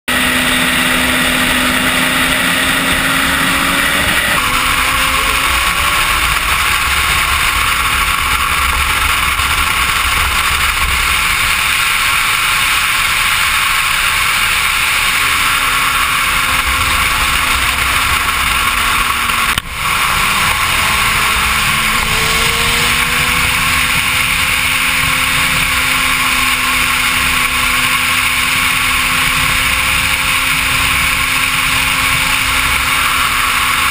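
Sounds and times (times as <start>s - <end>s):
motorcycle engine at speed: 0.1s - 33.9s
heavy wind rush: 0.2s - 33.9s.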